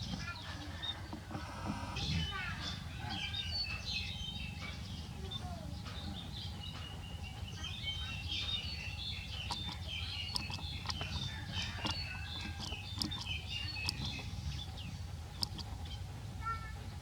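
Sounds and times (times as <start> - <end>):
low steady background noise: 0.0 - 17.0
small birds chirping: 0.0 - 17.0
sharp clicks: 9.5 - 11.2, 11.8 - 14.2, 15.4 - 15.8.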